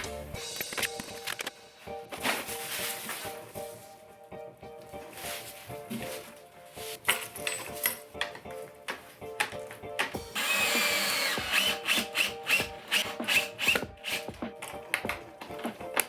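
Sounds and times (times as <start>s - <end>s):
background music: 0.0s - 16.0s
power drill running: 10.3s - 14.2s.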